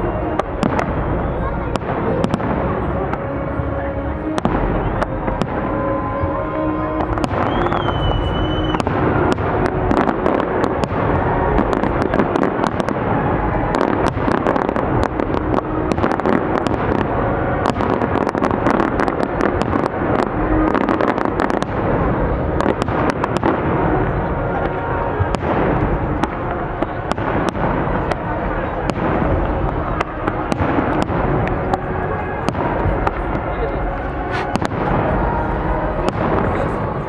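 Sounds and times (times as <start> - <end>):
fireworks bangs and crackling: 0.0 - 37.0.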